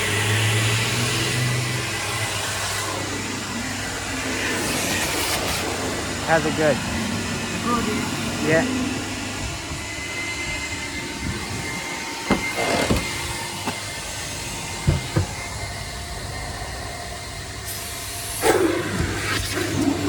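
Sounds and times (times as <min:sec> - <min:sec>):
vacuum cleaner humming: 0:00.0 - 0:20.0
sharp knocks: 0:12.3 - 0:13.8, 0:14.9 - 0:15.4.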